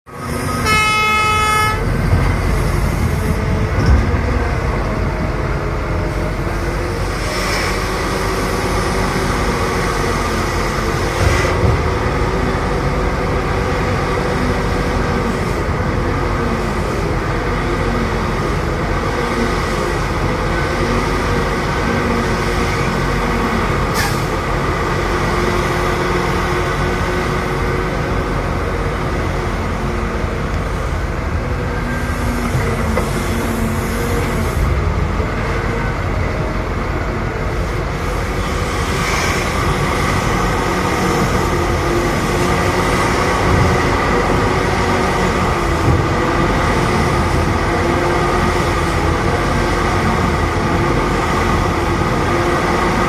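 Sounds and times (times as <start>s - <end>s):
excavator running: 0.1s - 53.0s
horn blast: 0.5s - 2.0s
machinery knocks and clanks: 1.8s - 7.3s, 10.9s - 14.0s, 39.0s - 47.8s.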